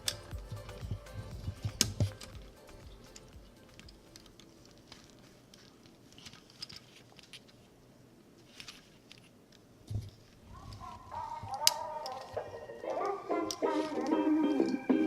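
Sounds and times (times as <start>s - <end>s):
plastic pieces clicking: 10.7s - 14.8s.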